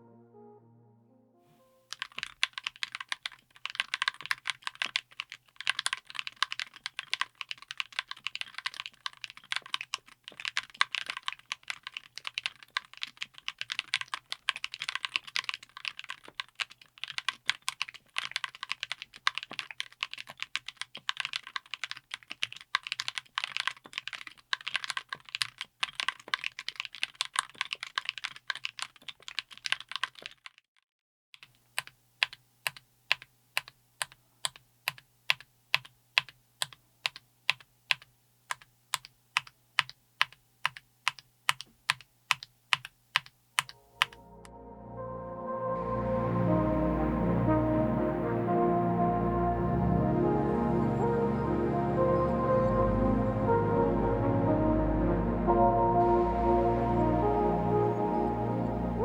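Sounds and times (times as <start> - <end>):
mechanical keyboard typing: 1.9 - 30.6, 31.4 - 44.2.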